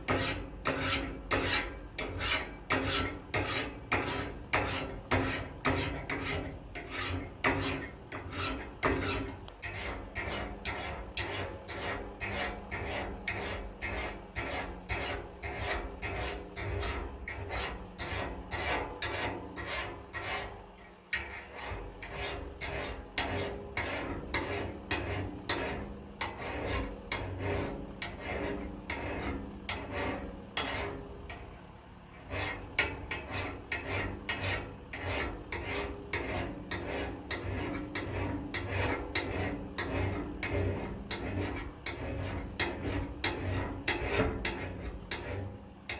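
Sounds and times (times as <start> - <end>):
metal file rasping: 0.0 - 31.4, 32.1 - 45.9.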